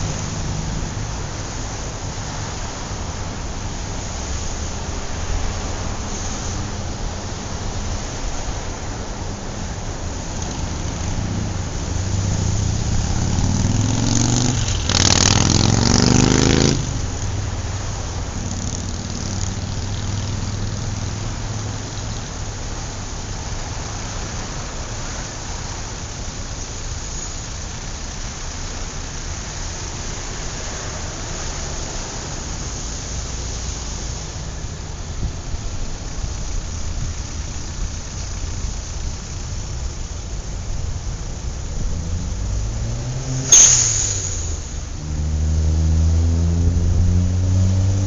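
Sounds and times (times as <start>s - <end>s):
car engines idling: 0.0s - 15.8s, 16.7s - 48.0s
traffic rumble: 0.0s - 48.0s
wind: 0.0s - 48.0s
vehicle accelerating past: 10.3s - 21.9s, 41.6s - 48.0s.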